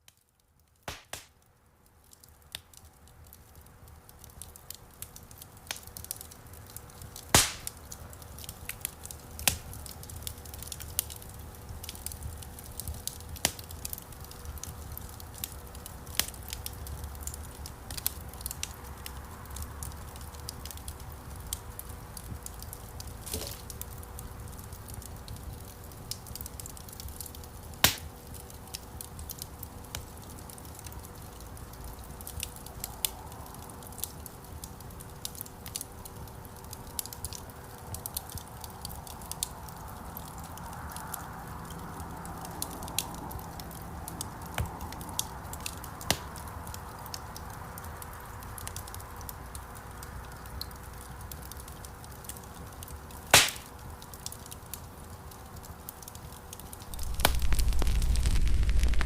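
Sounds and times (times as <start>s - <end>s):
campfire crackling and popping: 0.0s - 59.0s
low rumble of flames: 0.1s - 59.0s.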